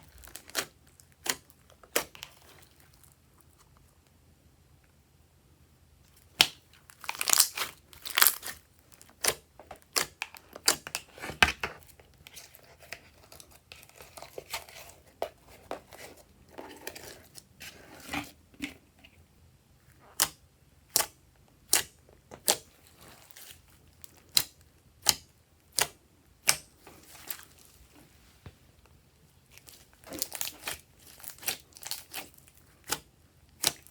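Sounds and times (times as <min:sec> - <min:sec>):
slime squeezed with sticky crackles: 0:06.2 - 0:09.3, 0:29.6 - 0:33.0.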